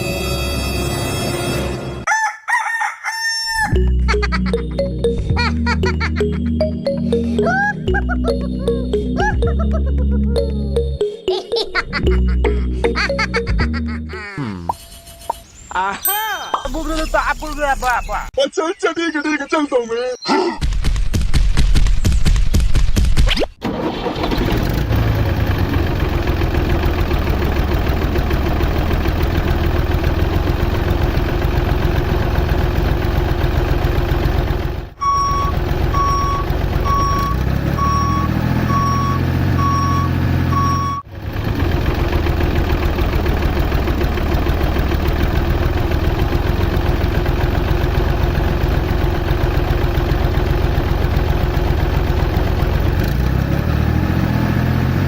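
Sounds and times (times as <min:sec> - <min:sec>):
small vehicle engine running: 0:23.6 - 0:55.0
reversing alarm beeping: 0:35.0 - 0:41.1.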